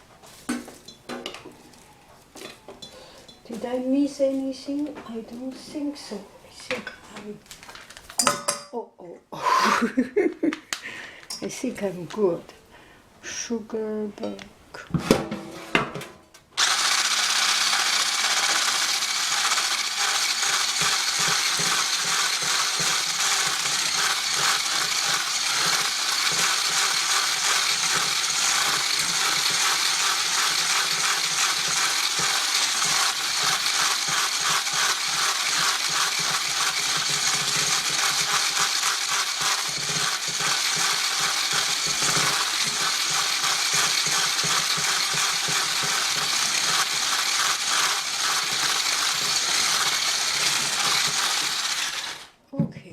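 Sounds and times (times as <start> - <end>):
electric blender running: 16.6 - 52.4.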